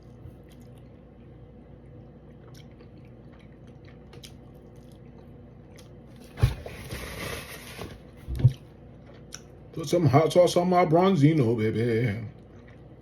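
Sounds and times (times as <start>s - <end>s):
person chewing: 0.0s - 6.0s, 12.3s - 13.0s.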